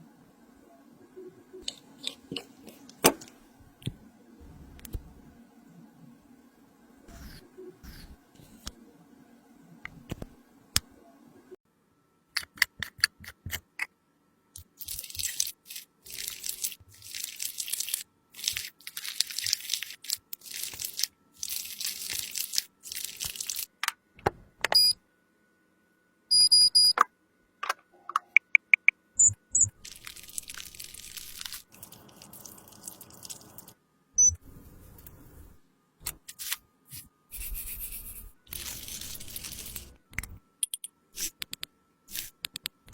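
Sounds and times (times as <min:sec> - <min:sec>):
sharp clicks and taps: 0:40.1 - 0:41.7, 0:42.4 - 0:42.9.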